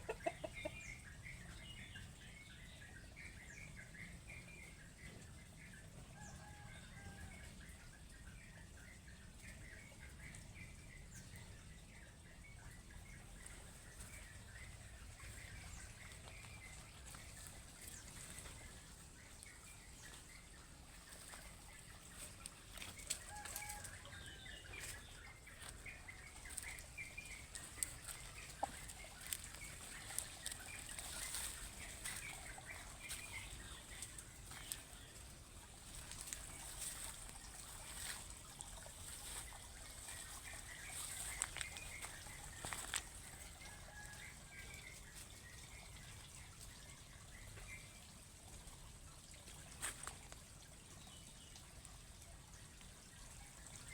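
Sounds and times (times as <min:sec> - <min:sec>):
chickens clucking: 0:00.0 - 0:04.0, 0:11.2 - 0:46.0.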